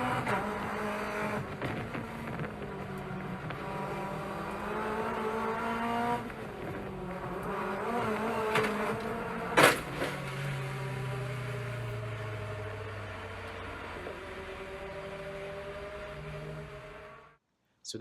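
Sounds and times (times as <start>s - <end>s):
race car engine revving: 0.0s - 17.4s
car crashing into wall: 8.4s - 10.5s.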